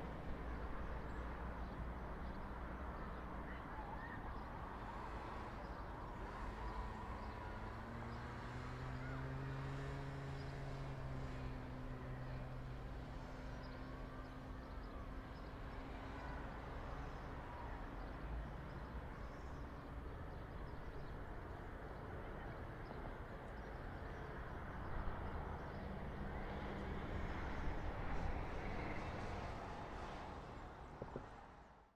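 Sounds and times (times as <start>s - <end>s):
vehicle engine hum: 0.0s - 31.7s
traffic rumble: 0.0s - 31.9s
faint people in background: 6.3s - 20.0s.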